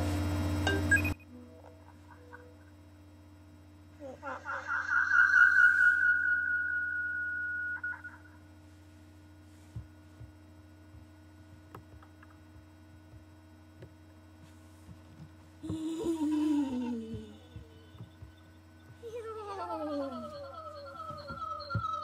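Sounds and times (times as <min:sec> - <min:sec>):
high feedback whine: 0:00.0 - 0:22.0
low hum: 0:00.0 - 0:22.0
wavering pitch sliding down: 0:04.6 - 0:08.3.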